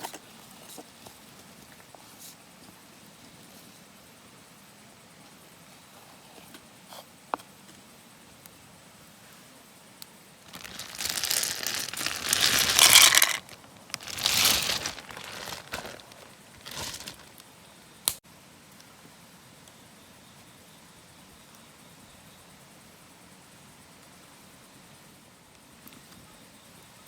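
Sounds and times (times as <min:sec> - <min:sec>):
crinkling rustling handling noise: 0:10.5 - 0:17.4.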